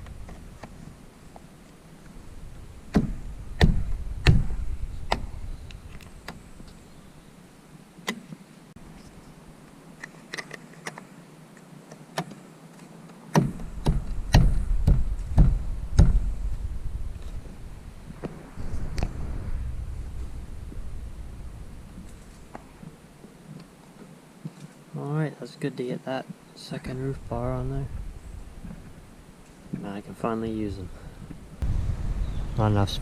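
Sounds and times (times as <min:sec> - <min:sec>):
roof rack knocks and clicks: 0:13.4 - 0:16.3.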